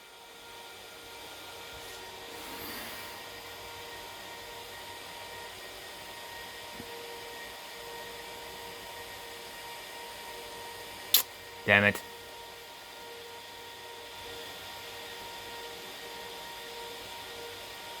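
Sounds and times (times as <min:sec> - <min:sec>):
server cooling fans whirring: 0:00.0 - 0:18.0.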